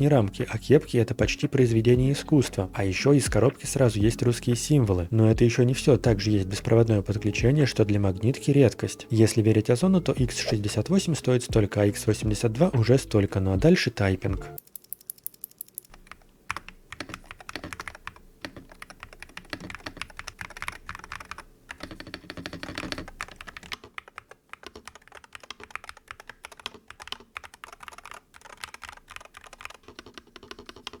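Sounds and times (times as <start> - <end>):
keyboard typing clacks: 14.4 - 31.0.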